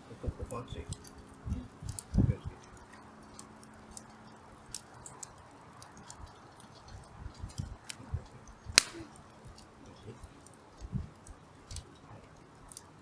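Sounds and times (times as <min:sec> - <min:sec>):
fire popping: 0:08.8 - 0:09.2
campfire crackling: 0:08.8 - 0:11.9.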